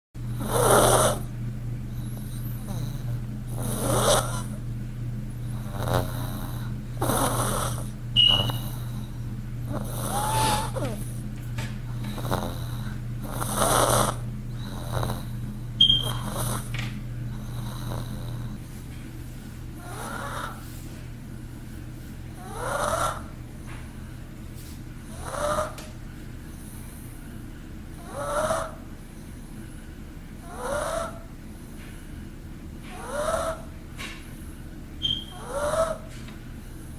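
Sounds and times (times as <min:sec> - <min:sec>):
dog snoring: 0:00.3 - 0:04.7, 0:05.4 - 0:11.2, 0:11.9 - 0:18.8, 0:19.8 - 0:20.8, 0:22.4 - 0:23.4, 0:25.0 - 0:27.3, 0:27.9 - 0:29.8, 0:30.4 - 0:31.8, 0:32.9 - 0:36.1
sharp high squeak: 0:08.2 - 0:08.6, 0:35.0 - 0:35.4.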